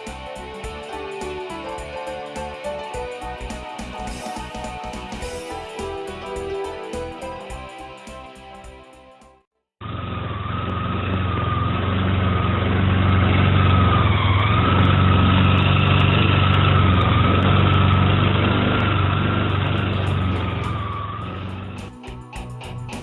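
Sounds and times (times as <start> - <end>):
scooter engine humming: 10.4 - 23.0.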